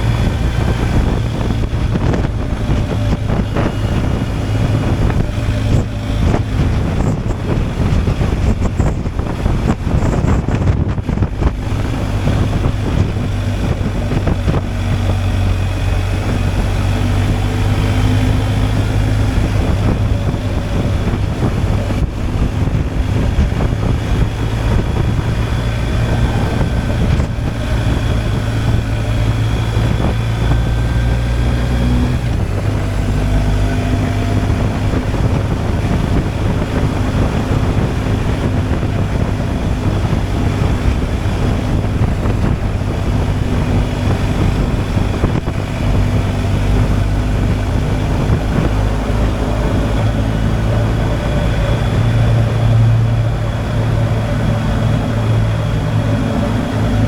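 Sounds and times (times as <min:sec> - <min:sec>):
motorcycle engine cruising: 0:00.0 - 0:57.0
wind noise on microphone: 0:00.0 - 0:57.0.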